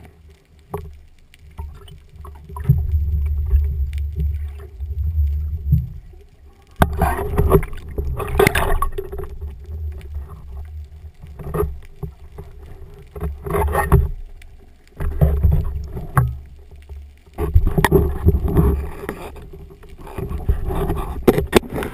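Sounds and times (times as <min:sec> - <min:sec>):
faint steady hum: 0:00.0 - 0:21.9
water rushing and sloshing: 0:00.0 - 0:21.9.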